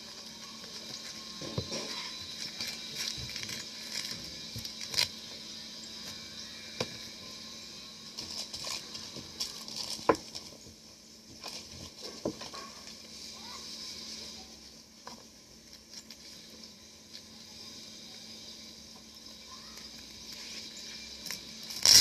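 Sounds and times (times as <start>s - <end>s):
velcro clicks and rustling: 21.2s - 22.0s.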